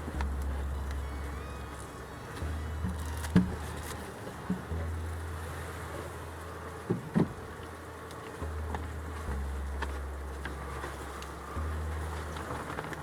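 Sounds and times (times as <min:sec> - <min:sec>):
bees buzzing: 0:00.0 - 0:05.8.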